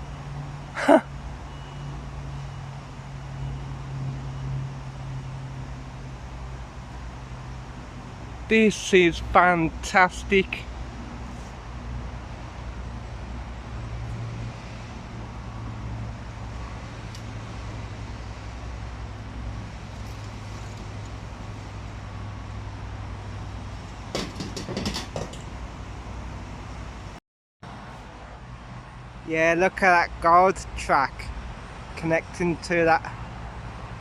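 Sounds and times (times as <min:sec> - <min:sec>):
sharp knocks or clatter: 0:24.1 - 0:25.5.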